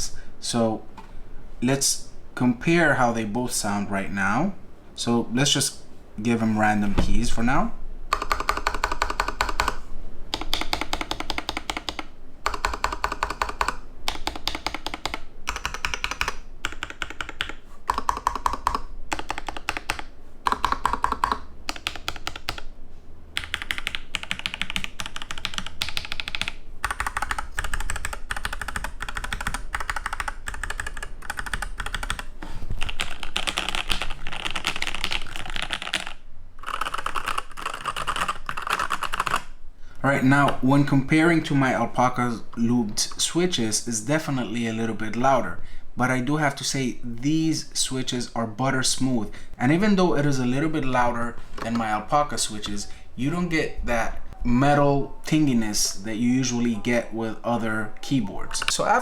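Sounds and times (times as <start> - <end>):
mechanical keyboard typing: 8.1 - 22.7, 23.4 - 39.5.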